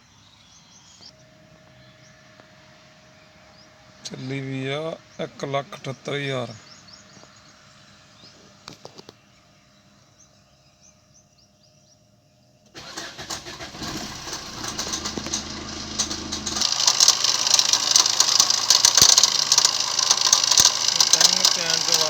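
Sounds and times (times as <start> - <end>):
clicks: 14.1 - 22.0.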